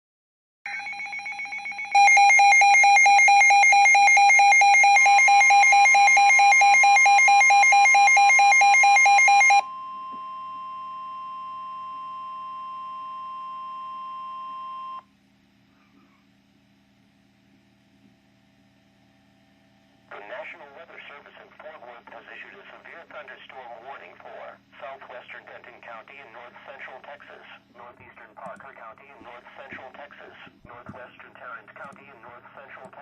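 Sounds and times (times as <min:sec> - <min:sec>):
steady single-pitch alert tone: 0:00.7 - 0:15.0
warbling electronic alarm: 0:00.7 - 0:15.0.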